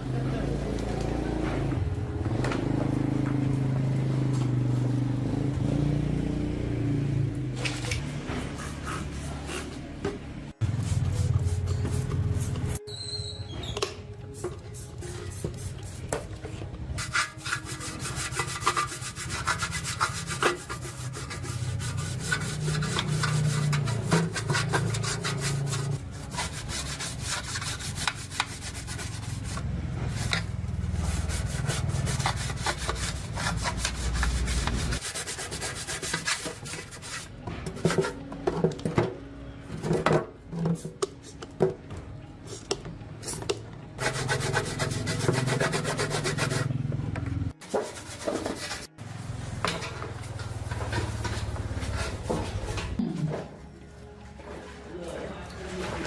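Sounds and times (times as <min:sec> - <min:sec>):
tool scraping a surface: 0:17.0 - 0:38.2, 0:44.0 - 0:46.7, 0:47.6 - 0:48.9.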